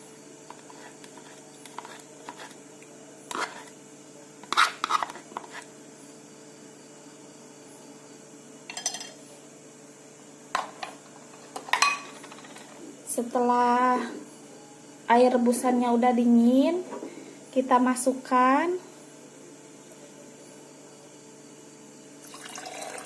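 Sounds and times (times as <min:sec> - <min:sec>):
spoon clinking on dishware: 0:08.7 - 0:09.2, 0:11.7 - 0:12.3.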